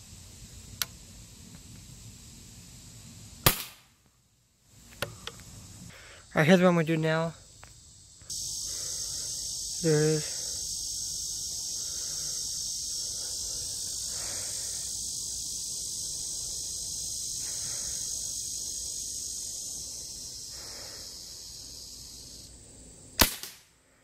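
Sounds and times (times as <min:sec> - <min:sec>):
insects droning: 0:00.0 - 0:24.0
pellet rifle firing: 0:03.4 - 0:03.9, 0:23.2 - 0:23.6.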